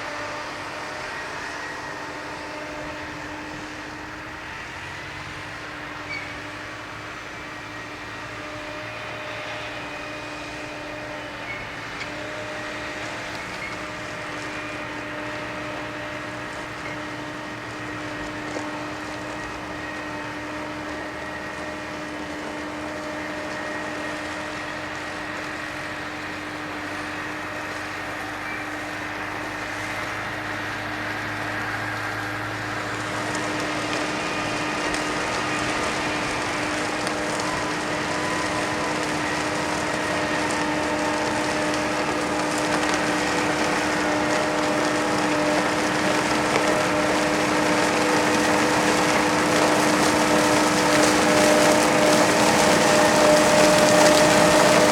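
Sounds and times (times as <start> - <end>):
harvester machine whine and hum: 0.0 - 54.9.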